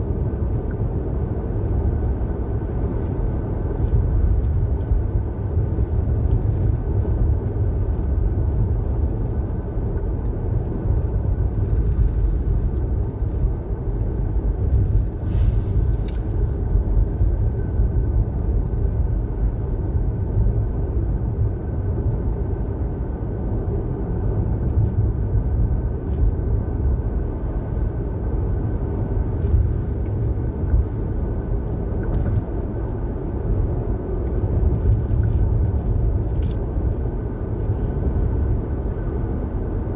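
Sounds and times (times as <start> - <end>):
car road and engine rumble: 0.0 - 39.9
brief hissing: 15.2 - 16.1.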